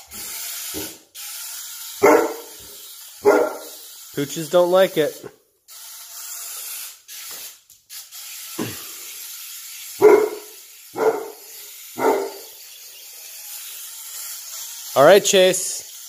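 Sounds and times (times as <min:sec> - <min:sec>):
dog barking: 0:02.0 - 0:02.6, 0:03.2 - 0:03.8, 0:10.0 - 0:12.5.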